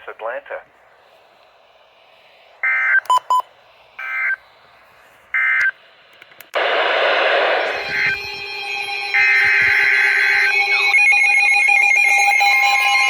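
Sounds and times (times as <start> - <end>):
loud radio static: 0.0 - 0.7, 6.6 - 11.0
warbling digital data tones: 6.6 - 13.0.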